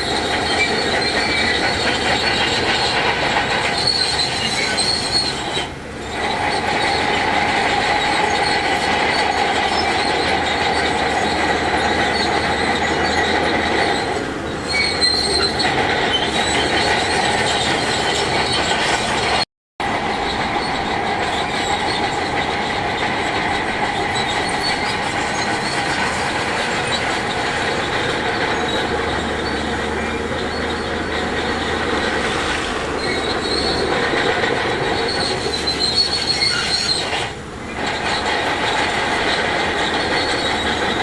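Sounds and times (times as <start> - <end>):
heavy machinery engine: 0.0 - 41.0
high metallic squeal and clatter: 0.0 - 41.0.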